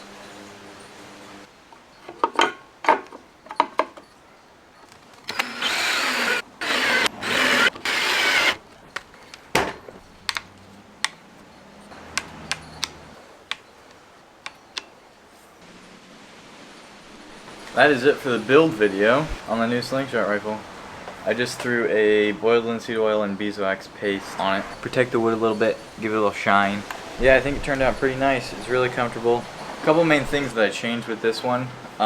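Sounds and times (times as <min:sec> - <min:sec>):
tool rubbing on wood: 0:05.4 - 0:08.6
sharp clicks and knocks: 0:11.9 - 0:15.0.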